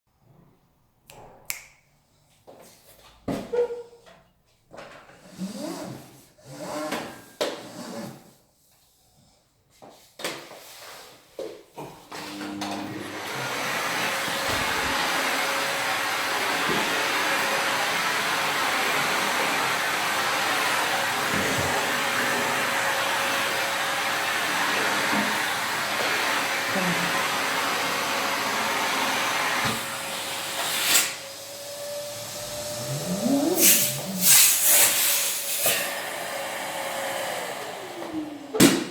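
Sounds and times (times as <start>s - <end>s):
vacuum suction air rush: 13.6s - 38.0s.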